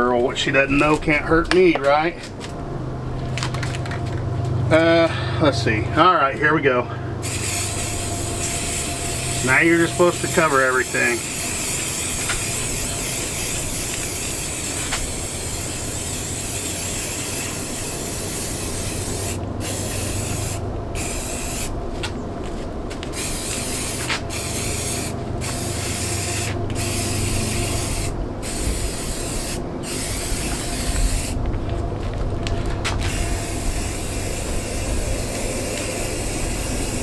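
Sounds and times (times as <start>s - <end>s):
spray paint can hissing: 7.2s - 21.8s, 23.0s - 31.4s, 33.0s - 37.0s.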